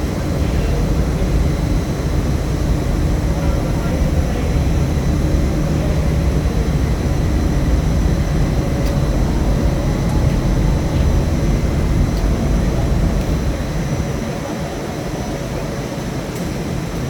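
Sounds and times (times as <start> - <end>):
machinery low hum: 0.0 - 17.0.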